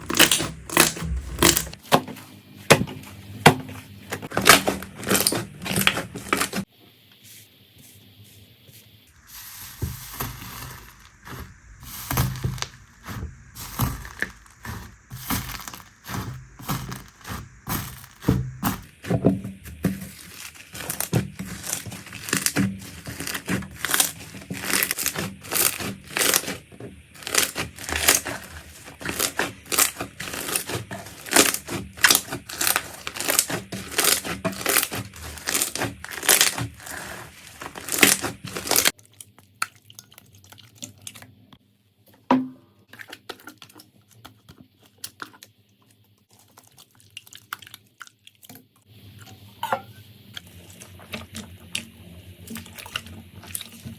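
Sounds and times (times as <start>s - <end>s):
slime crackling and popping: 9.3s - 19.2s, 19.9s - 39.7s.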